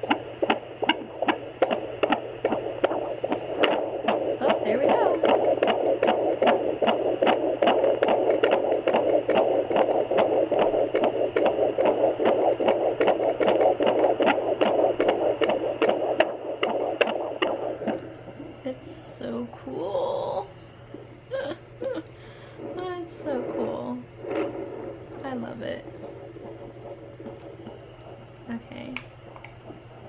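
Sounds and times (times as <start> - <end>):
fetal heartbeat whooshing: 0.0 - 30.0
steady hiss: 0.0 - 30.0.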